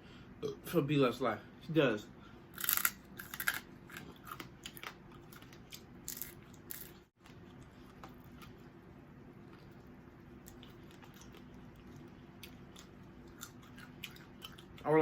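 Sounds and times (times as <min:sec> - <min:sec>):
faint steady hum: 0:00.0 - 0:15.0
chewing and crunching food: 0:02.5 - 0:15.0.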